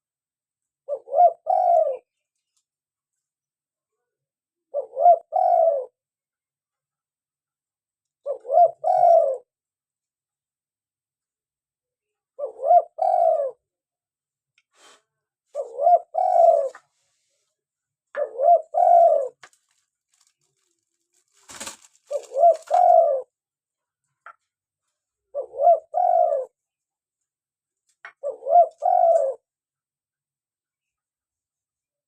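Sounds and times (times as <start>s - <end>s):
dove cooing: 0.8s - 2.1s, 4.7s - 6.0s, 8.2s - 9.5s, 12.4s - 13.6s, 15.5s - 16.9s, 18.2s - 19.5s, 21.4s - 23.3s, 25.3s - 26.6s, 28.1s - 29.4s.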